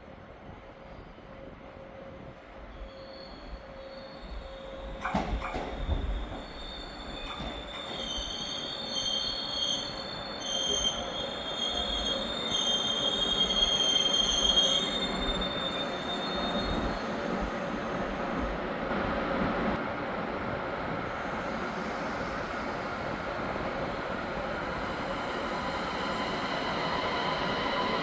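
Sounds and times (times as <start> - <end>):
train running through station: 0.0 - 28.0
wheels squealing on rails: 2.0 - 18.7.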